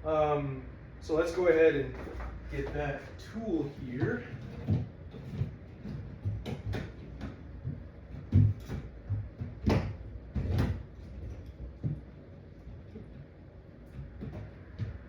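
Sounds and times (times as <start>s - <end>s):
tools knocking and clunking: 3.9s - 15.0s.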